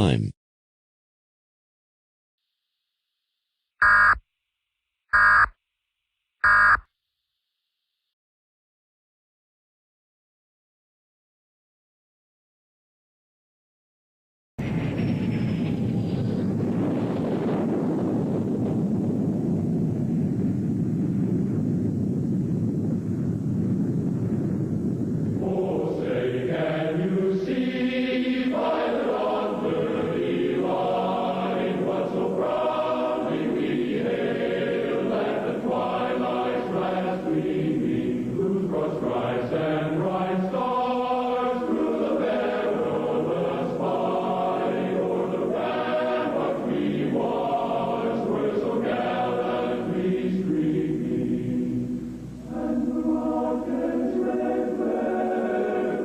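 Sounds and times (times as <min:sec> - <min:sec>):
choir singing an anthem: 0:25.4 - 0:56.0.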